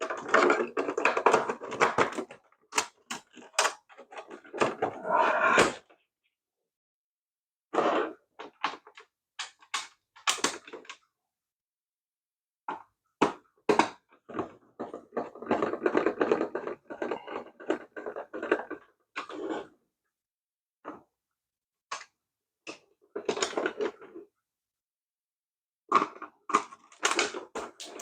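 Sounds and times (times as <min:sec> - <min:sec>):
plastic parts rattling: 0:00.0 - 0:04.8.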